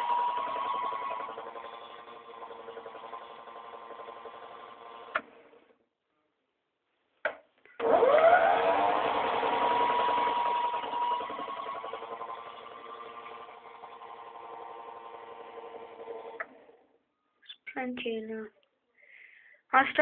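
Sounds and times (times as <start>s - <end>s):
small electric motor spinning: 0.0s - 5.2s, 7.8s - 16.7s.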